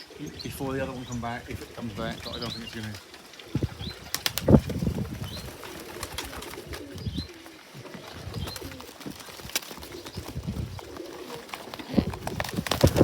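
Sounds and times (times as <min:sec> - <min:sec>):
pigeons cooing: 0:00.0 - 0:13.0
small birds chirping: 0:00.0 - 0:13.0.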